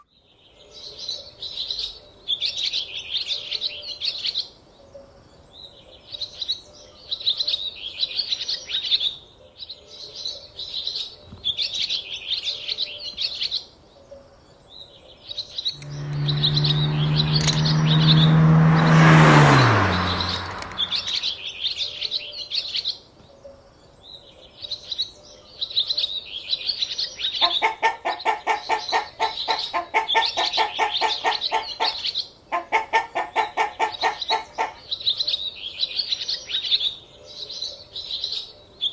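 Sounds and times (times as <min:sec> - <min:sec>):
loud low drone with hiss: 0:15.8 - 0:21.3
hen clucking: 0:27.4 - 0:34.8.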